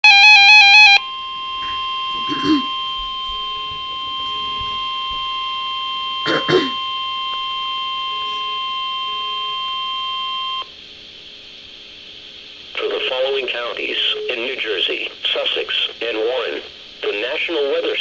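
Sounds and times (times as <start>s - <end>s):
steady high alert tone: 0.8s - 5.4s.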